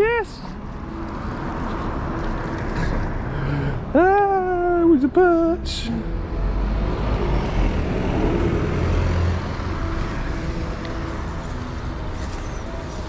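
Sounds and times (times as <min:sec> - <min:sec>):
vehicle passing rumble: 0:05.6 - 0:13.0.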